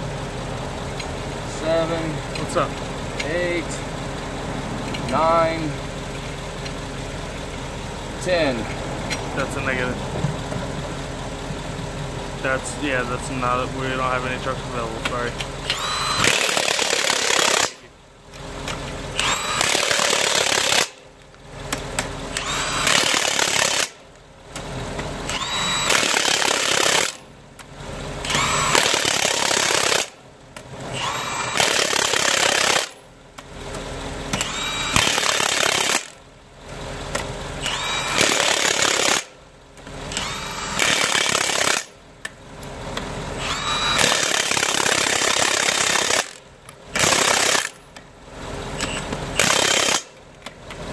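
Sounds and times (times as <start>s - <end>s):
impact wrench hammering: 15.6s - 17.9s, 18.6s - 21.0s, 21.7s - 27.3s, 28.2s - 30.2s, 30.9s - 33.5s, 34.3s - 36.2s, 37.1s - 39.4s, 40.1s - 42.0s, 43.4s - 48.0s, 48.8s - 50.2s
rising motor whine: 43.4s - 44.3s.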